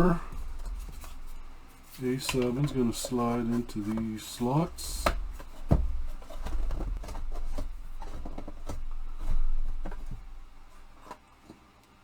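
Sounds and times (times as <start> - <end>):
low handling rumble: 0.0 - 11.0
rack parts clicking and knocking: 0.0 - 11.2.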